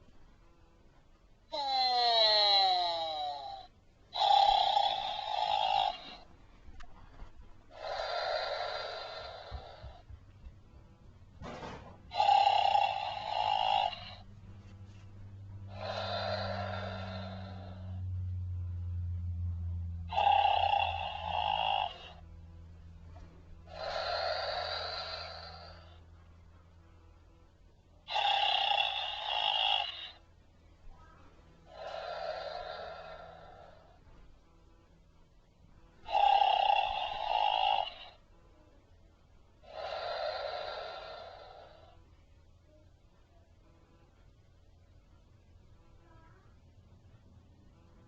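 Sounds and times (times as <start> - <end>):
low steady hum: 0.0 - 48.0
toy speaker playing snore: 1.5 - 6.3, 7.7 - 10.1, 11.4 - 14.4, 15.5 - 18.1, 20.1 - 22.4, 23.2 - 26.1, 28.0 - 30.3, 31.0 - 34.3, 36.0 - 38.3, 39.6 - 42.3.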